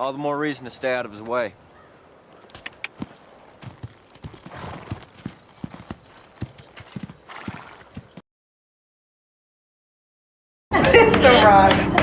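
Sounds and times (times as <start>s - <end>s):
horse hooves clip-clopping: 1.2s - 8.2s.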